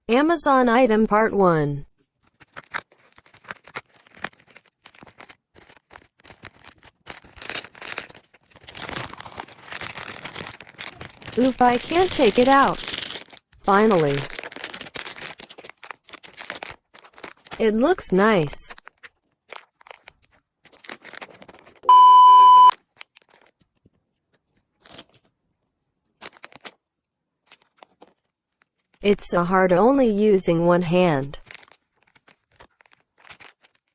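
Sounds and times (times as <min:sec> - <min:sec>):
packaging rustling: 0:02.1 - 0:17.6, 0:18.4 - 0:21.8, 0:22.7 - 0:25.4, 0:26.0 - 0:29.0, 0:31.4 - 0:33.9
packaging taps and scraping: 0:02.2 - 0:17.6, 0:18.4 - 0:21.8, 0:22.8 - 0:25.3, 0:26.1 - 0:26.8, 0:27.4 - 0:29.0, 0:31.4 - 0:33.9
loud electronic beep: 0:21.9 - 0:22.7.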